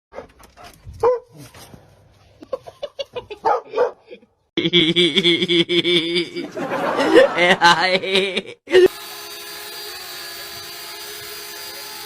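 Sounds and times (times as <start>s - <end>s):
dog barking: 1.0s - 1.4s, 3.4s - 4.1s.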